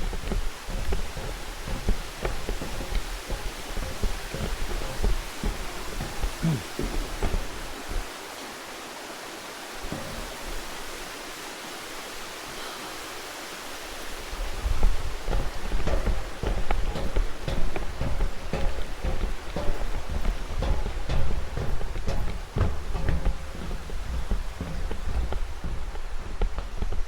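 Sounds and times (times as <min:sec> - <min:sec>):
low thumps and rumbles: 0:00.0 - 0:08.1, 0:14.3 - 0:27.0
rushing stream water: 0:00.0 - 0:27.0.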